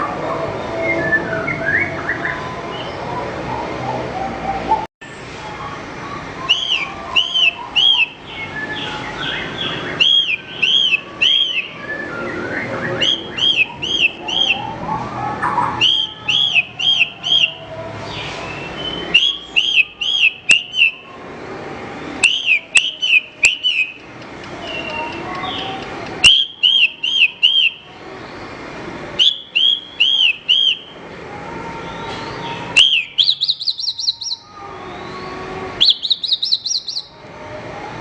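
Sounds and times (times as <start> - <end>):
bird whistled song: 0.8 - 3.1, 6.4 - 21.0, 22.2 - 27.9, 29.2 - 31.0, 32.0 - 37.2
bird chirps and trills: 5.5 - 21.1, 22.2 - 27.9, 31.8 - 37.2
sharp clicks: 23.7 - 26.4.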